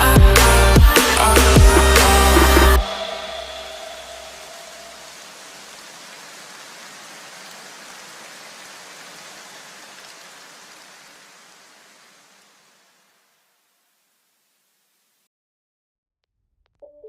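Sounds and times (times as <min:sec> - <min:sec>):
steady noise hiss: 0:02.9 - 0:15.3.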